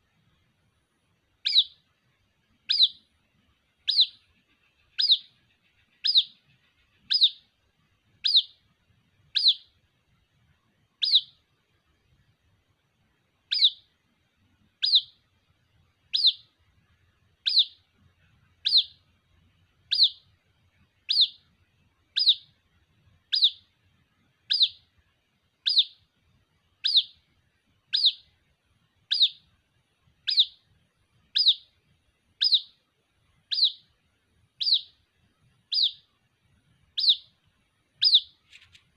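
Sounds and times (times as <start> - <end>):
bird chick peeping: 1.4 - 1.9, 2.6 - 9.8, 10.9 - 11.6, 13.4 - 14.0, 14.6 - 15.4, 16.0 - 16.6, 17.2 - 22.6, 23.2 - 23.8, 24.4 - 25.0, 25.6 - 26.1, 26.8 - 28.4, 29.0 - 29.6, 30.2 - 32.8, 33.4 - 36.2, 36.8 - 38.9.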